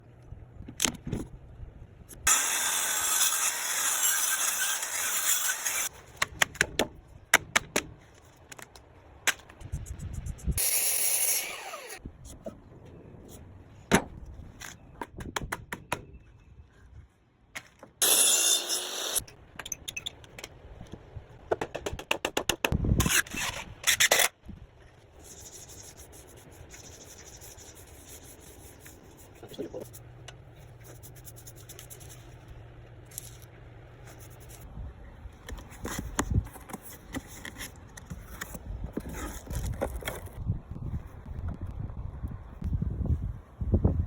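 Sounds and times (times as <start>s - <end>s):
power tool cutting wood: 2.3s - 5.9s, 10.6s - 12.0s, 18.0s - 19.2s.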